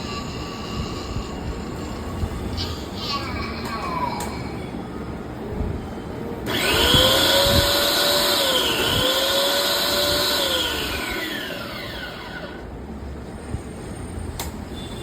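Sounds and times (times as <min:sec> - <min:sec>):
pressure washer motor whining: 0:06.5 - 0:12.7.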